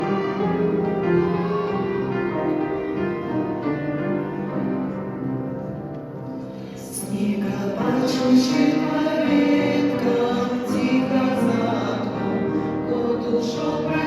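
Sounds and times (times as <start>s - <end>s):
piano playing held chords: 0.0s - 14.0s
women's choir singing: 6.8s - 14.0s.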